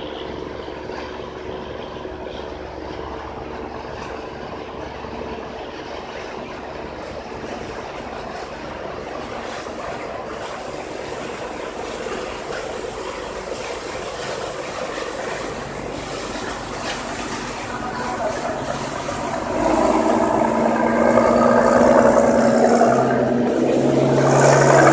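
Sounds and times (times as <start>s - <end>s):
boat engine running: 0.0s - 24.9s
rushing noise: 15.6s - 24.9s.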